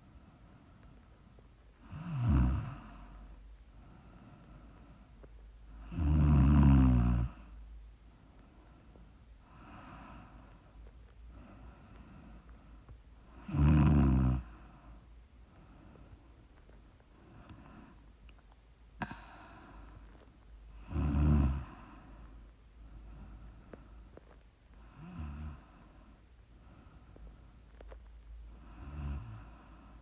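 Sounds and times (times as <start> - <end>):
soft breaths: 0.0 - 5.9, 7.3 - 13.6, 14.3 - 30.0
loud snores: 1.9 - 3.0, 5.8 - 7.5, 13.4 - 14.6, 20.8 - 22.0, 24.9 - 25.7, 28.6 - 29.6.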